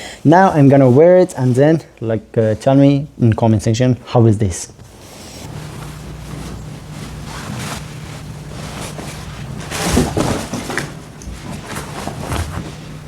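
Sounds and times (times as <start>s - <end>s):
faint low hum: 1.8s - 13.0s
fabric rustling: 4.8s - 13.0s.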